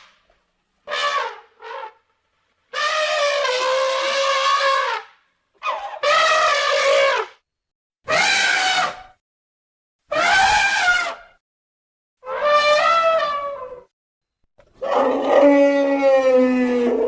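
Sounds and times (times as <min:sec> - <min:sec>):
cartoon elephant trumpeting: 0:00.9 - 0:02.0, 0:02.7 - 0:07.4, 0:08.1 - 0:09.2, 0:10.1 - 0:11.4, 0:12.2 - 0:13.9, 0:14.8 - 0:17.0.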